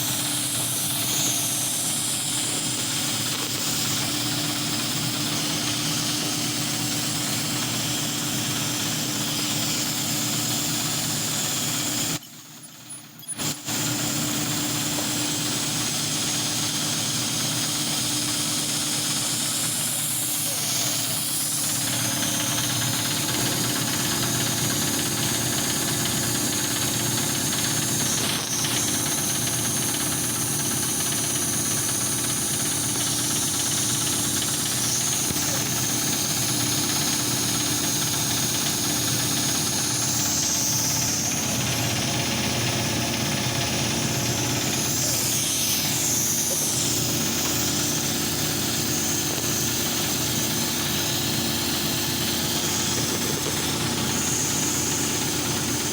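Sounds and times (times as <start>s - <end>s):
machinery hum: 18.8s - 55.9s.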